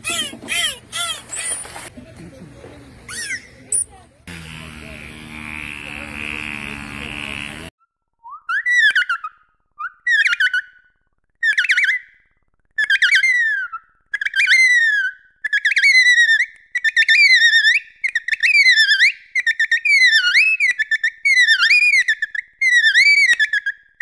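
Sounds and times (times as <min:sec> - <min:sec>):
dolphin whistles: 0:00.0 - 0:01.9, 0:03.1 - 0:03.9.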